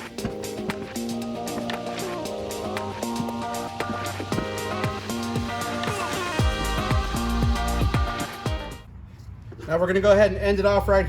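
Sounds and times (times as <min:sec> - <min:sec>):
electronic music: 0:00.0 - 0:08.8
deep bass hits: 0:06.4 - 0:08.8.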